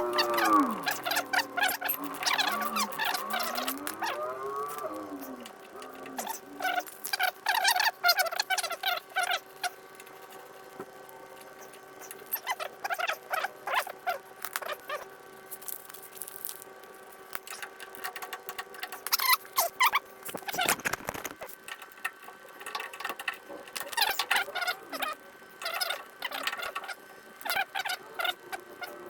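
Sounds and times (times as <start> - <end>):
metal squeaking under wrench: 0.0 - 9.8, 11.6 - 15.1, 18.9 - 21.5.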